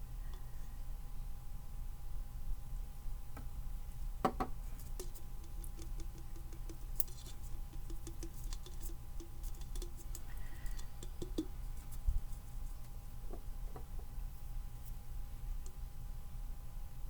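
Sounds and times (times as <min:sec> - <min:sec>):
steady low hum: 0:00.0 - 0:17.0
faint rapid tapping: 0:05.0 - 0:11.5.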